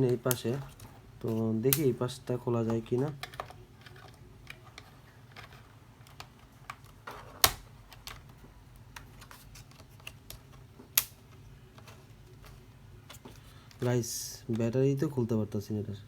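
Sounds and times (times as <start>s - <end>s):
plastic snaps: 1.7s - 2.0s, 9.8s - 11.4s.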